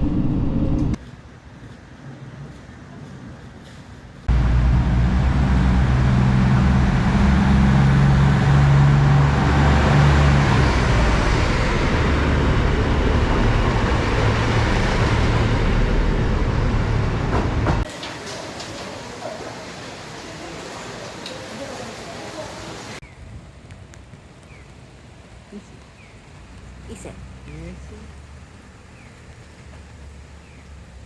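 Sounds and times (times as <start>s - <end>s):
vehicle engine drone: 0.0s - 1.0s, 4.2s - 17.9s.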